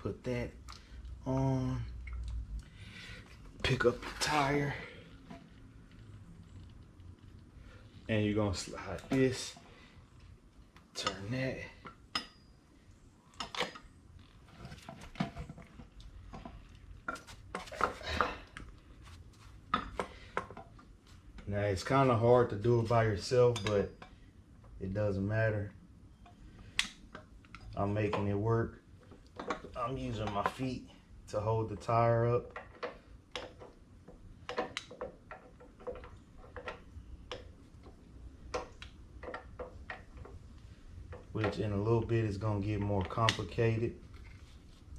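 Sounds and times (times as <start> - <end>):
light clicks and knocks of parts: 26.2 - 44.9.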